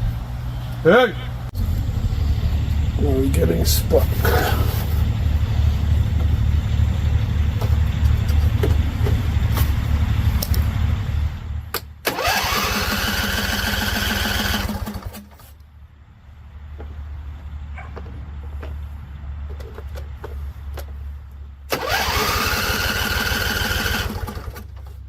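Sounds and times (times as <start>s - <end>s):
mower engine running: 1.5s - 15.5s, 21.7s - 25.0s
electric starter cranking: 11.8s - 15.5s, 21.7s - 25.0s.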